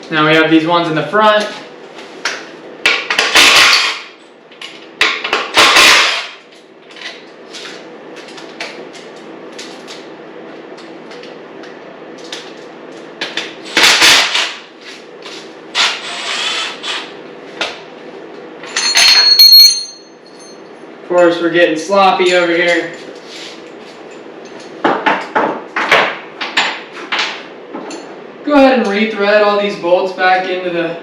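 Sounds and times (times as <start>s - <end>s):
clattering metal tools: 18.6s - 20.7s.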